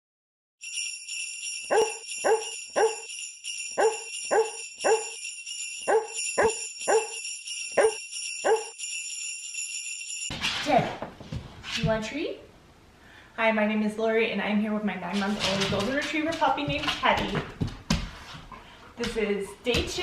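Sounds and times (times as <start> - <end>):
sleigh bells jingling: 0.6 - 10.3.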